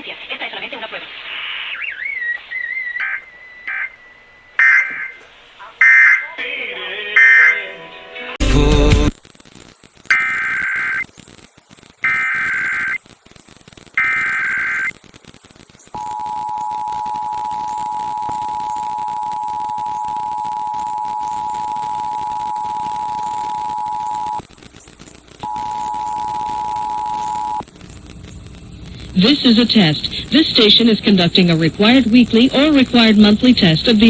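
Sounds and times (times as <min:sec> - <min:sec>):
steady hiss: 0:00.0 - 0:06.2, 0:08.5 - 0:34.0
warbling data tones: 0:01.3 - 0:06.4, 0:07.2 - 0:07.6, 0:10.1 - 0:11.1, 0:12.0 - 0:13.0, 0:14.0 - 0:15.0, 0:15.9 - 0:28.8
two-tone attention signal: 0:03.0 - 0:05.2, 0:05.8 - 0:06.4, 0:07.2 - 0:07.7, 0:16.0 - 0:24.4, 0:25.5 - 0:27.6.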